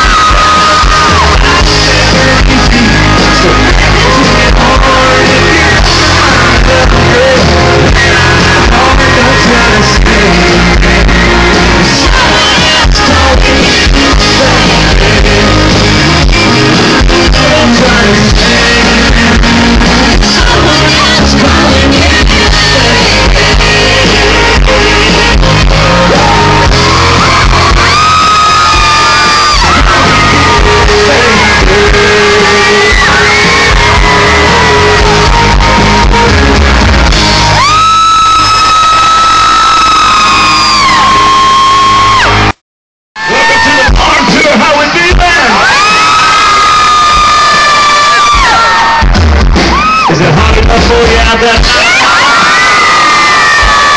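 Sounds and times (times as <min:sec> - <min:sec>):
person singing lead vocal: 0:00.0 - 0:38.5
live country band playing: 0:00.0 - 0:42.5, 0:43.2 - 0:53.9
crowd shouting and whooping: 0:00.0 - 0:42.6, 0:43.2 - 0:53.9.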